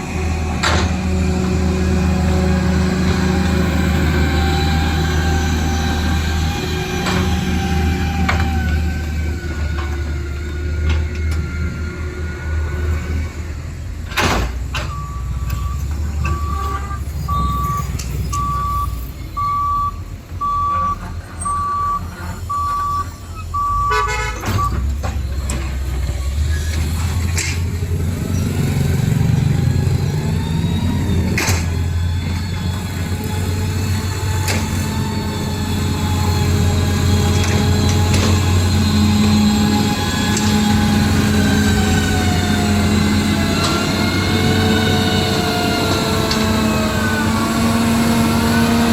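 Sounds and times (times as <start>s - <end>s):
high reversing beeps: 14.9s - 24.8s.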